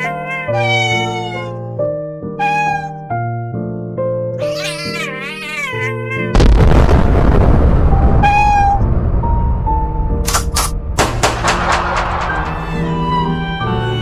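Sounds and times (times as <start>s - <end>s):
cat meowing: 0.0s - 1.8s, 2.4s - 3.1s, 4.4s - 6.4s, 8.1s - 8.9s
background music sustained notes: 8.8s - 14.0s
loud rushing noise: 10.9s - 13.3s.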